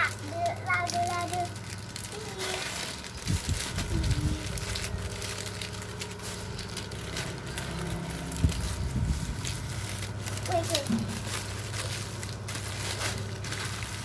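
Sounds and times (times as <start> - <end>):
plastic packaging crinkling: 0.0 - 14.0
steady low hum: 0.0 - 14.0.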